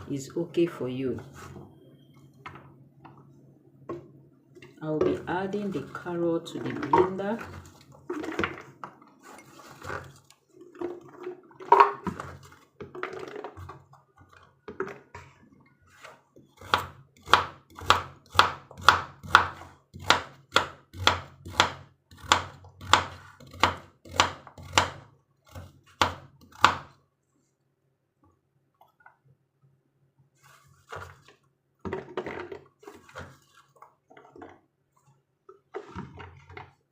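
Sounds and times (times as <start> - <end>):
knife chopping carrots: 16.0 - 27.0.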